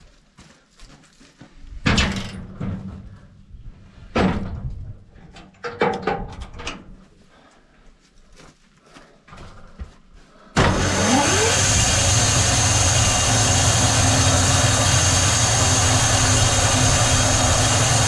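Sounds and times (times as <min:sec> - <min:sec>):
heavy knocks and clatter: 0:01.8 - 0:03.3, 0:04.1 - 0:06.8.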